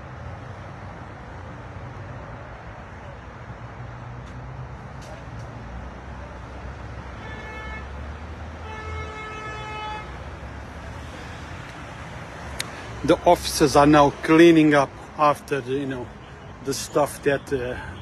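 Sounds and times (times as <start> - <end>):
traffic rumble: 0.0 - 18.0
vehicle horn honking: 7.2 - 8.0, 8.6 - 10.2.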